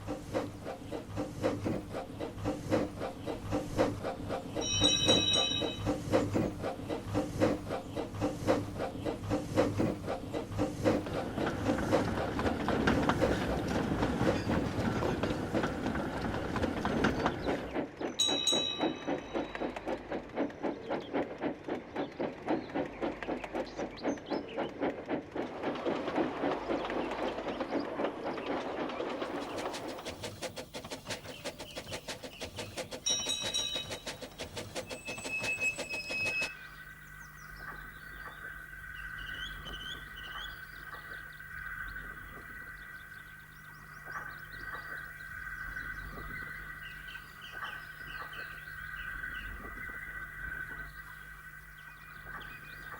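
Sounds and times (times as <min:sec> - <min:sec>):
steam locomotive puffing: 0:00.0 - 0:18.0, 0:29.2 - 0:36.5.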